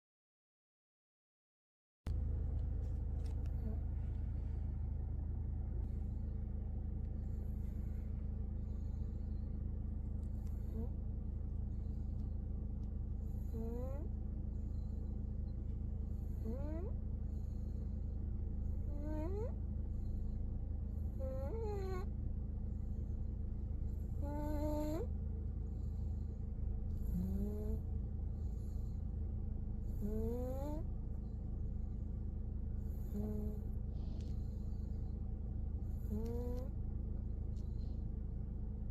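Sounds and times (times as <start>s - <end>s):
steady low drone: 2.1s - 38.9s
baby snoring: 10.4s - 10.9s, 13.4s - 14.1s, 16.3s - 16.9s, 18.8s - 19.6s, 21.1s - 22.1s, 24.1s - 25.1s, 27.0s - 27.8s, 30.0s - 30.9s, 32.9s - 34.3s, 36.0s - 36.8s.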